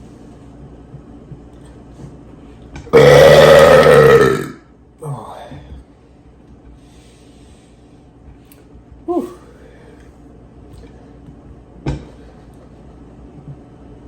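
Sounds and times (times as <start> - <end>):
man's throat vocal sound: 2.9 - 5.4.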